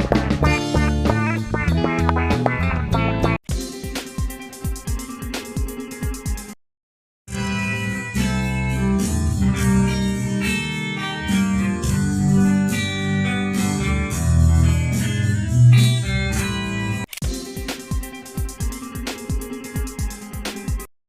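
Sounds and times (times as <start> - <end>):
plucked guitar music: 0.0 - 3.9, 7.3 - 17.0
music with steady beat: 0.0 - 6.6, 8.2 - 20.9.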